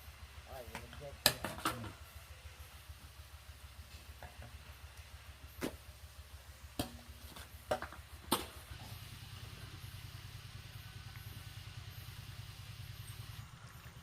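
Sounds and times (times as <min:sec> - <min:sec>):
small engine running: 0:07.4 - 0:14.0.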